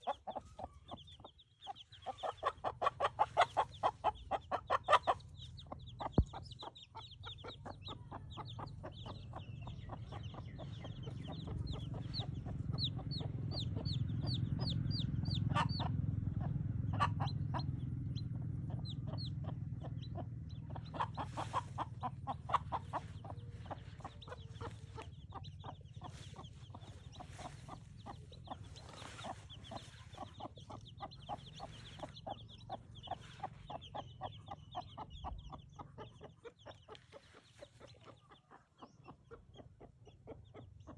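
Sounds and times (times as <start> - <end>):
chicks peeping: 0.0 - 40.9
hen clucking: 0.0 - 40.9
low rumble: 8.7 - 33.7.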